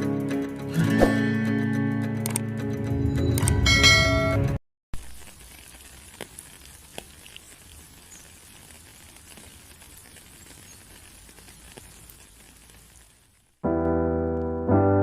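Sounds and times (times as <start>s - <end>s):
small clicks and crackles: 5.0s - 13.6s.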